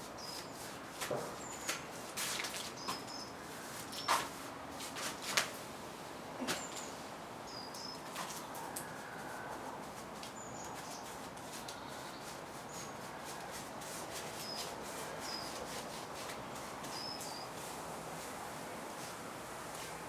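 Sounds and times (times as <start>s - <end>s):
steady outdoor hiss: 0.0s - 20.0s
small birds chirping: 16.9s - 17.6s.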